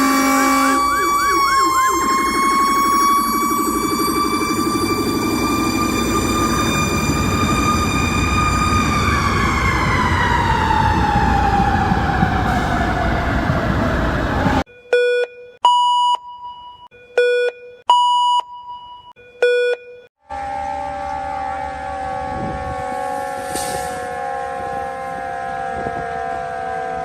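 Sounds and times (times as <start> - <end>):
siren winding down: 0.0 - 14.6, 20.3 - 27.0.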